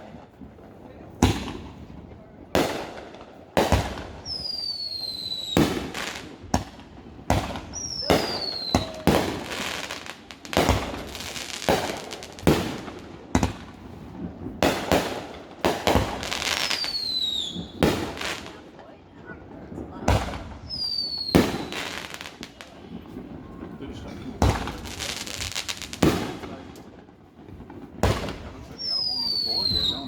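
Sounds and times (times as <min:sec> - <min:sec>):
fireworks bangs: 0:00.0 - 0:30.0
fireworks crackling: 0:00.0 - 0:30.0
descending firework whistles: 0:04.2 - 0:06.3, 0:07.5 - 0:11.7, 0:16.2 - 0:18.2, 0:20.4 - 0:26.5, 0:28.2 - 0:30.0.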